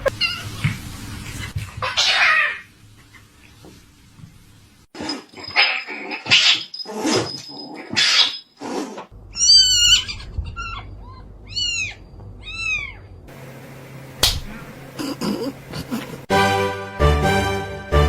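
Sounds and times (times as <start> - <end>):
cat meowing: 9.4 - 13.1.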